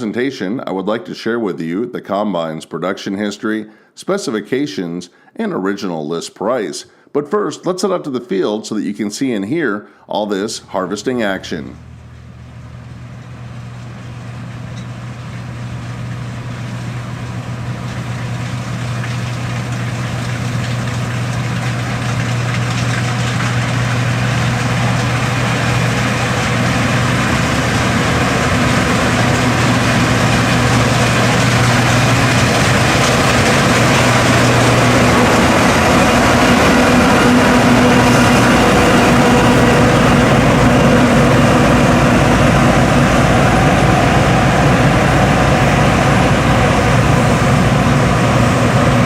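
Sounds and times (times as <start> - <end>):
combine harvester running: 10.6 - 49.0.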